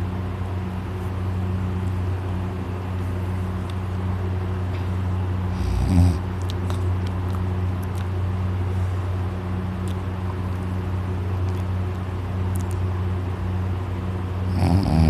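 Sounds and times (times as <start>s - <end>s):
steady low hum: 0.0s - 15.0s
man snoring: 5.5s - 6.2s, 14.5s - 15.0s.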